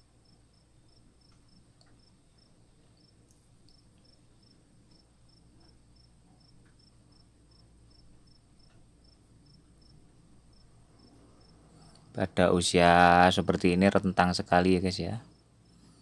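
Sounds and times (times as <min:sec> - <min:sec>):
faint steady hum: 0:00.0 - 0:16.0
faint ticks: 0:01.2 - 0:02.2, 0:02.8 - 0:04.2, 0:08.6 - 0:08.9.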